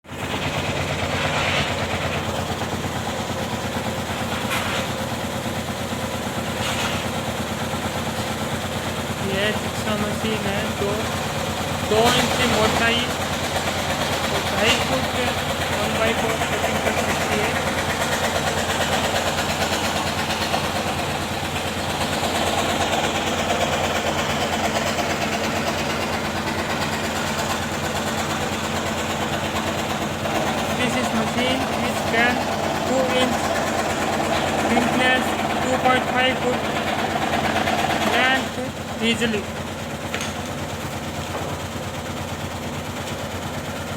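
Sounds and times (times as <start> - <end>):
jigsaw cutting wood: 11.8 - 39.4.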